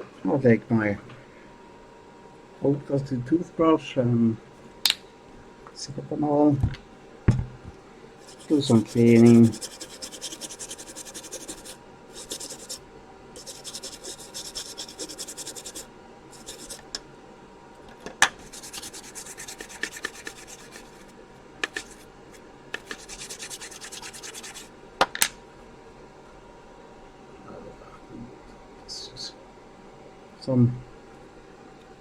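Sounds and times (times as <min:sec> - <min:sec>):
toothbrush scrubbing circuit board: 0:08.2 - 0:12.8, 0:13.4 - 0:17.0, 0:18.4 - 0:22.0, 0:22.8 - 0:24.7.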